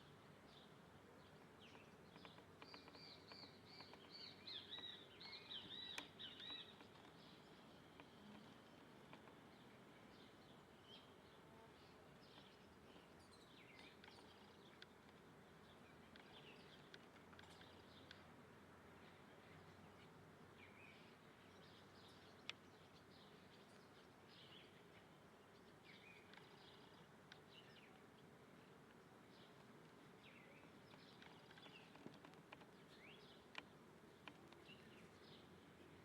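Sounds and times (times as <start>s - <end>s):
background hiss: 0.0s - 36.0s
bird chirps: 1.6s - 8.7s.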